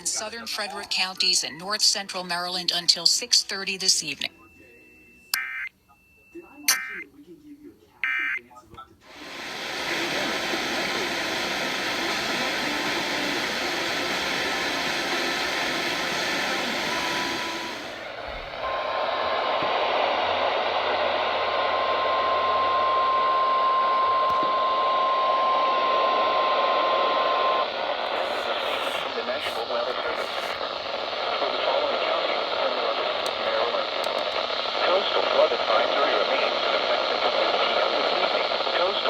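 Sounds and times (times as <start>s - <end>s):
radio static hiss: 0.0s - 4.8s, 6.4s - 39.0s
emergency alert tone: 4.2s - 7.0s.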